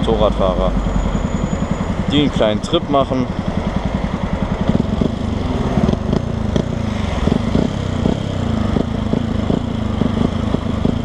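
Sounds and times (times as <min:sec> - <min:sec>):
motorcycle engine revving while riding: 0:00.0 - 0:11.0.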